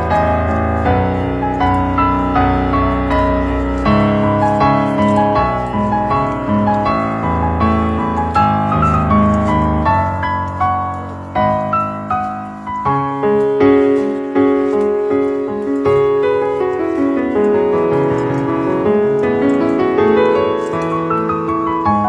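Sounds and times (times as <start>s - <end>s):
gentle piano music: 0.0s - 22.0s.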